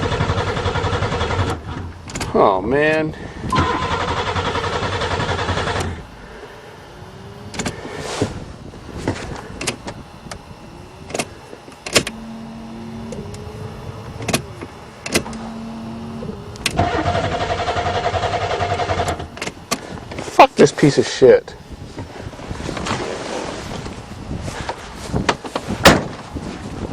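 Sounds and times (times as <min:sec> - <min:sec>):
starter cranking engine: 0:00.0 - 0:02.4, 0:03.5 - 0:06.0, 0:11.1 - 0:20.2
short rising whines: 0:03.4 - 0:19.3.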